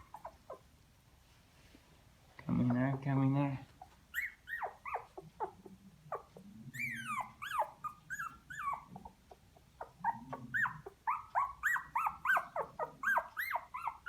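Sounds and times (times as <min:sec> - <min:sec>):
puppies whining and squealing: 0:00.0 - 0:00.7, 0:03.8 - 0:14.0.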